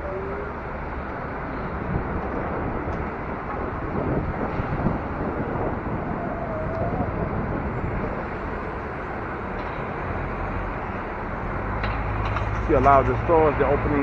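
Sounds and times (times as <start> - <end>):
wind rushing: 0.0 - 9.3
street traffic: 0.0 - 14.0.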